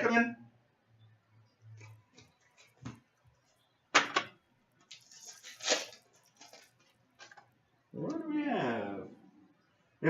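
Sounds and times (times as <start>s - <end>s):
packet crinkling rustle: 4.8s - 7.5s.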